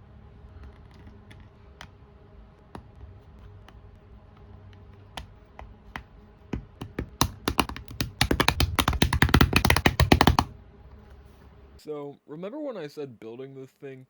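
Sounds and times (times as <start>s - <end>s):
typing on computer keyboard: 6.6s - 10.5s.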